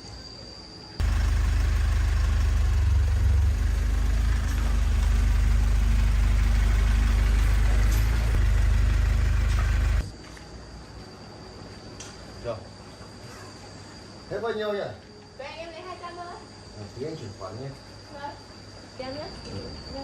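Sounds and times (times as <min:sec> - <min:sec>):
rice milling machine droning: 0:01.0 - 0:10.1.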